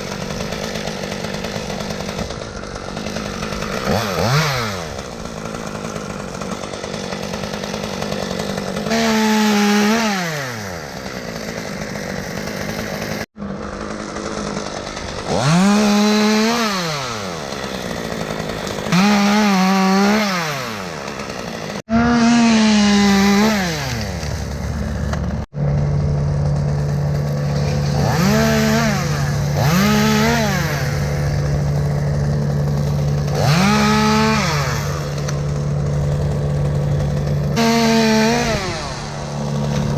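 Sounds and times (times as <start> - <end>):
chainsaw revving into cuts: 0.0 - 39.9
low engine drone: 24.4 - 28.0.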